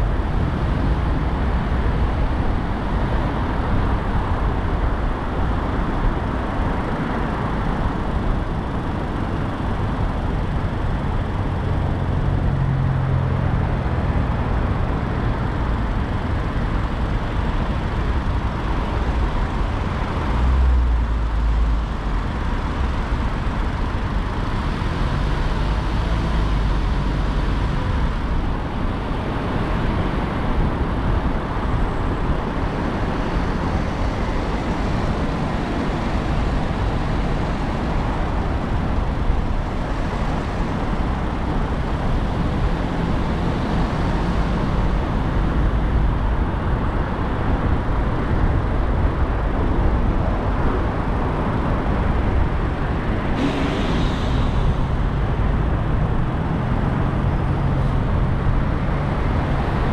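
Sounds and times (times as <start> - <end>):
car engine: 0.0 - 59.9
tyres rumbling on road: 0.0 - 59.9
brief hiss: 53.4 - 55.2.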